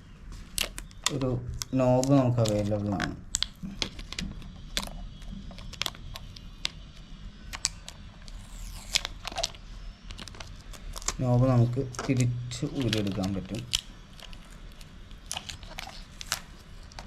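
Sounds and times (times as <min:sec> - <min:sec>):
hands clicking and knocking plastic: 0:00.5 - 0:06.8.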